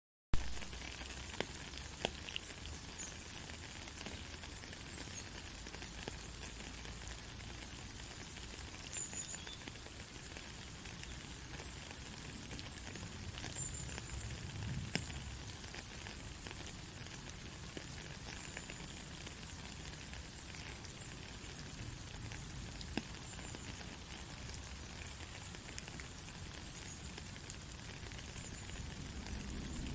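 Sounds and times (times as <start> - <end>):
steady rain hiss: 0.4 - 29.9
raindrop taps: 12.4 - 16.7, 22.3 - 29.9.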